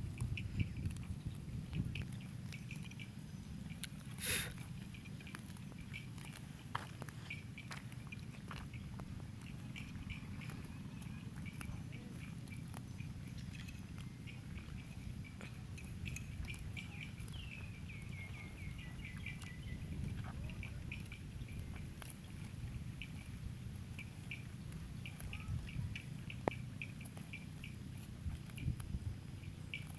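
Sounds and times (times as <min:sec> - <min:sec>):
steady low rumble: 0:00.0 - 0:29.8
cow tearing and chewing grass: 0:00.0 - 0:29.9
high chirping: 0:07.2 - 0:21.7.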